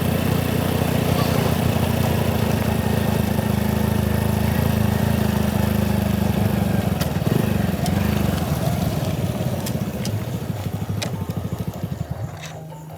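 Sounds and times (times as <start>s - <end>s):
motorcycle engine running: 0.0s - 12.9s
sharp ticks: 9.4s - 12.9s.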